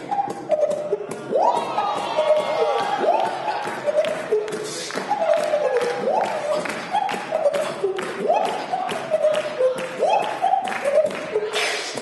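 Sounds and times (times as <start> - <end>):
beatboxing mouth percussion: 0.0 - 12.0.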